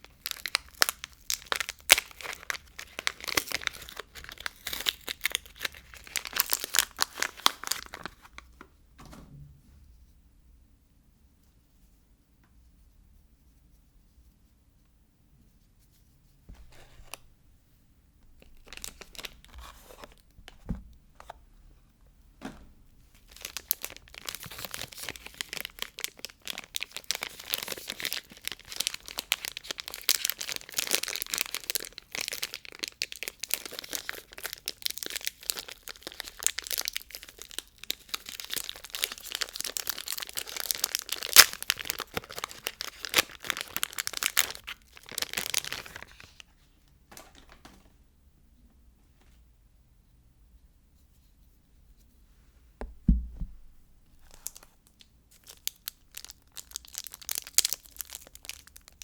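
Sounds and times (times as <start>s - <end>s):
wrapper crinkling and tearing: 0.0s - 8.4s, 18.4s - 20.3s, 23.2s - 46.5s, 54.2s - 59.0s.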